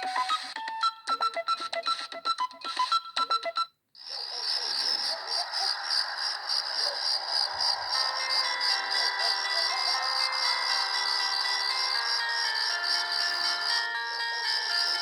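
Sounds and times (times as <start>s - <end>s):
electronic ringtone melody: 0.0s - 3.8s, 7.5s - 15.0s
rapid high ringtone pulses: 0.0s - 15.0s.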